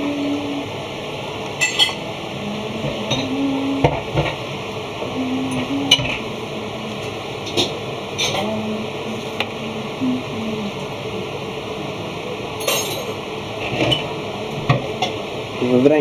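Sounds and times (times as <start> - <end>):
utensils clinking against dishes: 1.6 - 2.2, 12.6 - 15.2.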